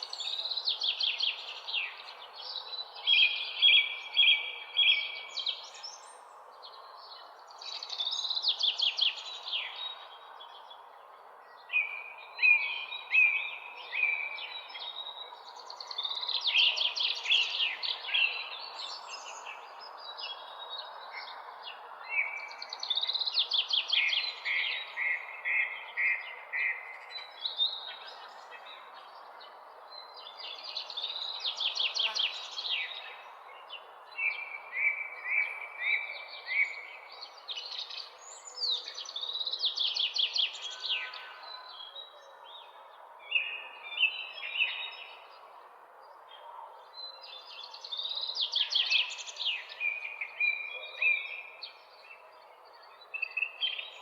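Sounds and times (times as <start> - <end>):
songbirds chirping and trilling: 0.0 - 54.0.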